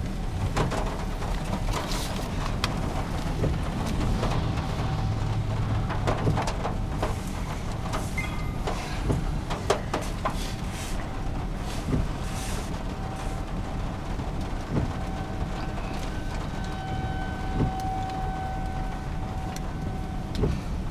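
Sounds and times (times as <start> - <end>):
vehicle noise: 0.0 - 20.9
wind: 0.0 - 20.9
distant warning siren: 12.8 - 20.9.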